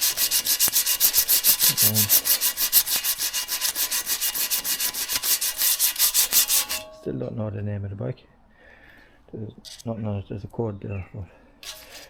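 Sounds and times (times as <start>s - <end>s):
sandpaper scraping on metal: 0.0s - 6.9s, 11.6s - 12.0s.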